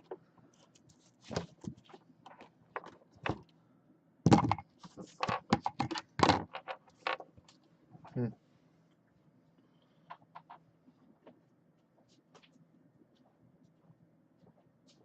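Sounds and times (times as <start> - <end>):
objects knocking and clicking: 4.3 - 7.4.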